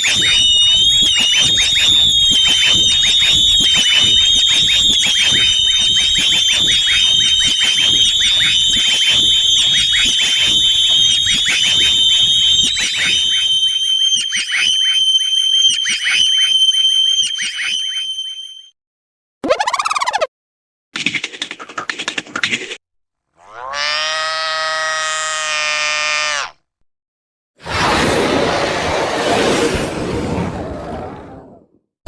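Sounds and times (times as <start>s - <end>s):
high wavering whistle: 0.0s - 18.8s
short downward chirps: 19.4s - 20.3s.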